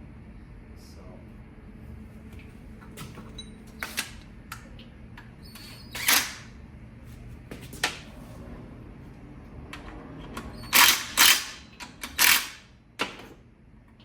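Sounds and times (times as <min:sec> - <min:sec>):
metal tools clinking: 0:12.2 - 0:12.6.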